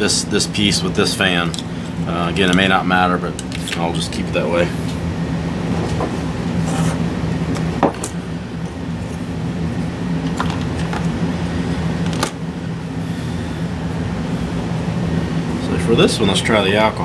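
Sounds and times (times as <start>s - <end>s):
low machine hum: 0.0s - 17.0s
plastic fan parts clicking: 1.3s - 4.2s, 10.2s - 11.1s.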